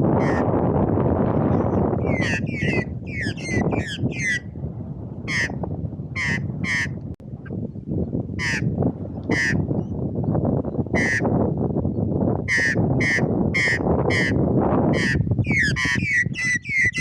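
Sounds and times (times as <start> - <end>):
bird giving harsh crow-like calls: 0.2 - 0.5, 2.0 - 4.4, 5.3 - 5.6, 6.2 - 7.0, 8.4 - 8.7, 9.3 - 9.6, 11.0 - 11.3, 12.5 - 17.0.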